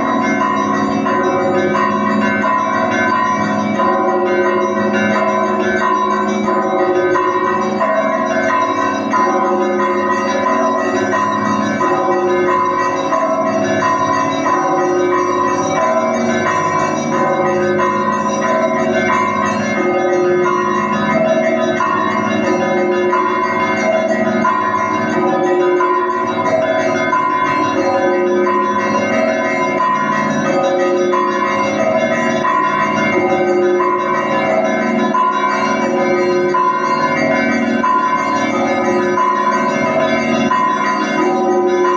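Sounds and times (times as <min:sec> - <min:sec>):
deep bells ringing: 0:00.0 - 0:41.9
small high bells ringing: 0:00.0 - 0:41.9.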